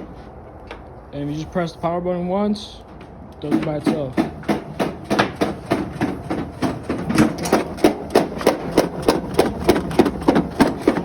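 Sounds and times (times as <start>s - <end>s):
rhythmic knocking: 3.5s - 11.0s
electric spreader running: 4.6s - 11.0s.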